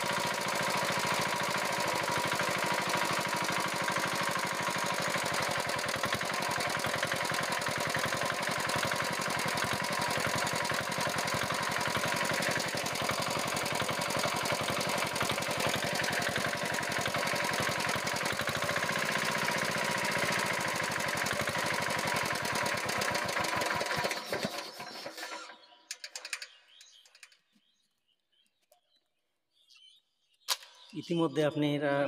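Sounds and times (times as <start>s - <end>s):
diesel engine knocking: 0.0s - 24.6s.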